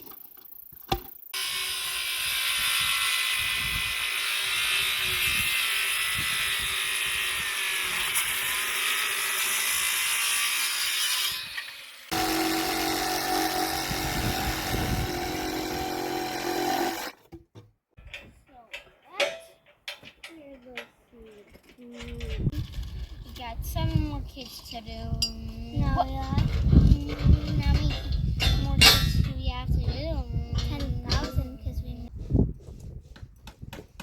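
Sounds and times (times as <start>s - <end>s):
power saw cutting timber: 1.4s - 17.2s.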